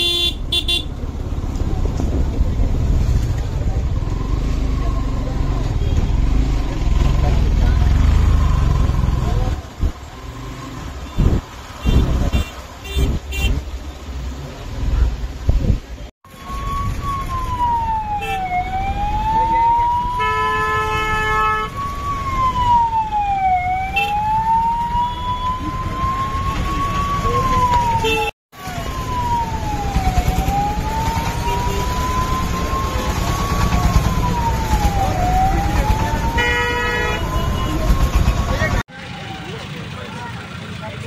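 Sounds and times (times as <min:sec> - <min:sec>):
vehicle horn: 0:00.0 - 0:00.9, 0:20.2 - 0:21.7, 0:36.4 - 0:37.7
rumble of traffic: 0:00.0 - 0:41.0
police siren wailing: 0:16.3 - 0:39.8.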